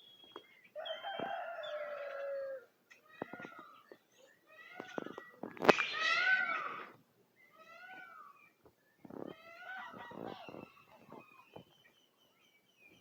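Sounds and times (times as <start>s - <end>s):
small birds chirping: 0.0s - 13.0s
animal calls rising and falling: 4.5s - 8.4s, 9.1s - 11.6s.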